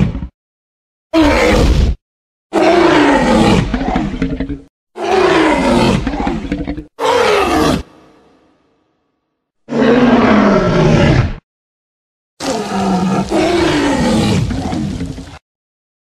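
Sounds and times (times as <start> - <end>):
dinosaur roars: 1.2 - 1.9, 2.5 - 8.5, 9.7 - 11.4, 12.4 - 15.4.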